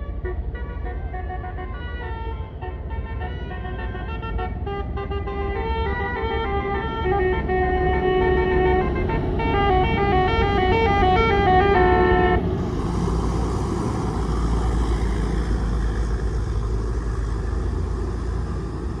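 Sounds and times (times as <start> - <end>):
musical bus horn tune: 0.0 - 12.6
low engine rumble: 0.0 - 19.0
road noise: 0.0 - 19.0.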